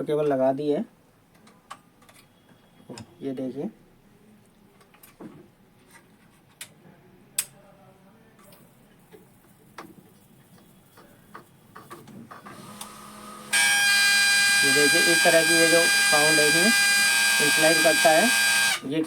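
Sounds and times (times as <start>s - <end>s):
printer powering up: 12.4s - 18.9s
scanner motor whine: 12.6s - 18.8s.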